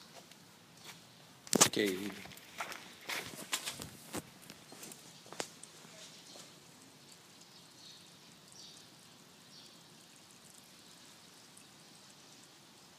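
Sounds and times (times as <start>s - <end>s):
faint outdoor background hiss: 0.0s - 12.9s.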